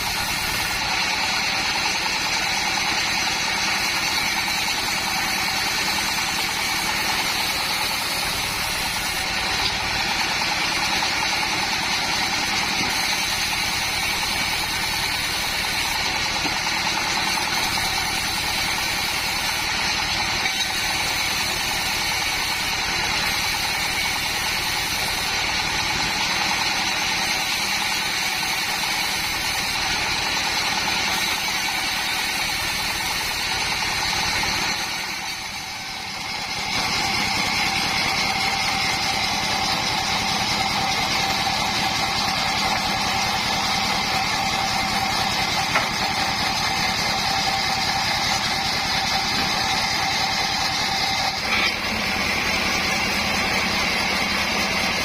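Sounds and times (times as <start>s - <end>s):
machine drone: 0.0s - 55.0s
saw whining: 0.0s - 55.0s.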